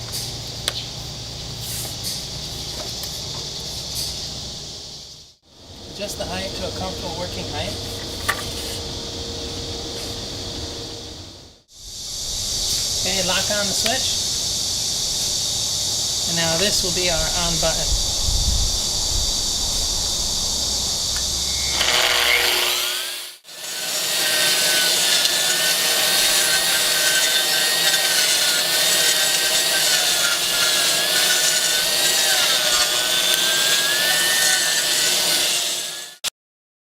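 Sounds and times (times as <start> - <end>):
concrete grinder grinding: 21.2 - 36.2.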